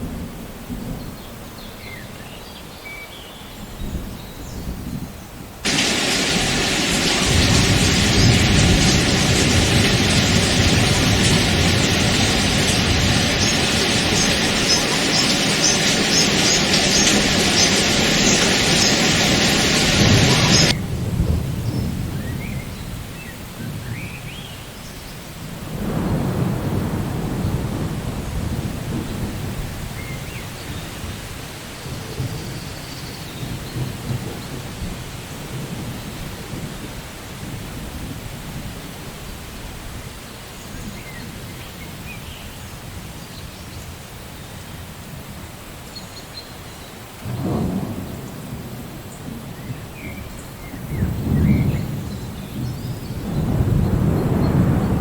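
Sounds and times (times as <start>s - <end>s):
rain falling: 5.4s - 55.0s
loud hiss: 5.6s - 20.8s
thunder rumbling: 5.6s - 24.1s, 25.6s - 42.2s, 46.9s - 55.0s.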